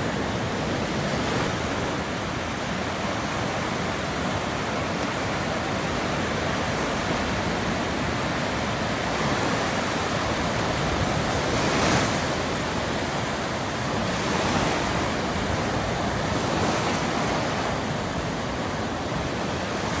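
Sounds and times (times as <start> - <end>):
waves breaking on shore: 0.0 - 20.0.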